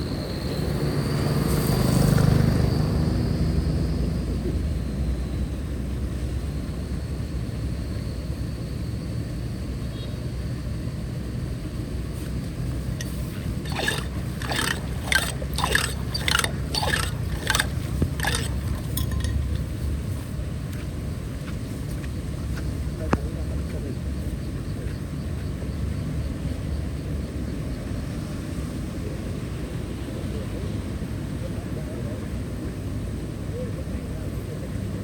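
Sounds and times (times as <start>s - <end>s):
water rushing: 13.0s - 19.6s
sharp scraping knocks: 13.0s - 19.7s.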